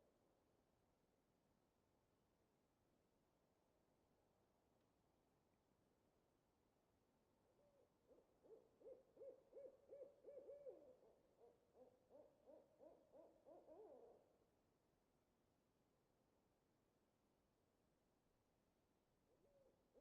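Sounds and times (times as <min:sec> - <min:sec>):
owl hooting: 0:08.1 - 0:14.3.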